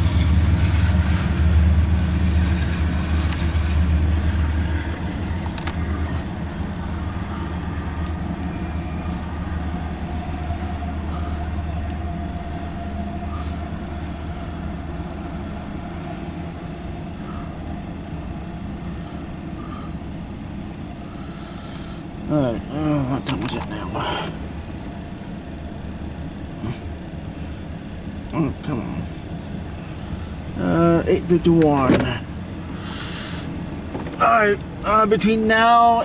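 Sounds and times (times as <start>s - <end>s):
train clanks: 0.0s - 18.3s, 31.2s - 33.1s, 33.7s - 35.3s
train wheels rumbling on rail: 0.0s - 36.0s.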